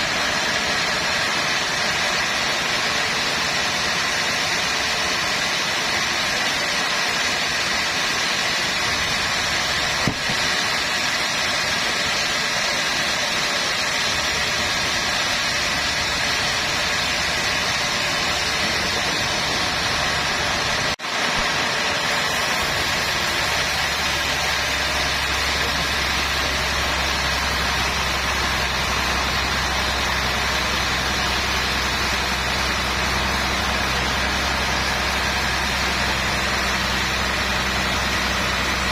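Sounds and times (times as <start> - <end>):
sawmill machinery whirring: 0.0 - 38.9.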